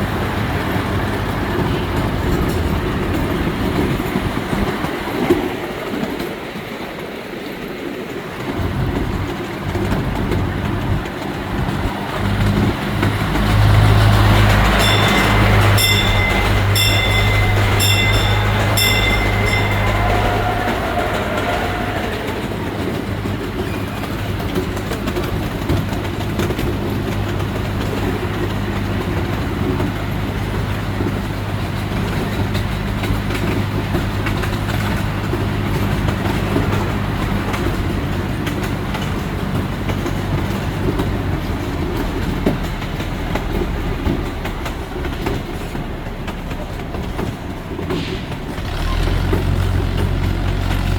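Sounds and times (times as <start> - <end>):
train wheels rumbling on rail: 0.0 - 50.9
engine hum: 8.4 - 50.9
high rings: 14.4 - 22.4.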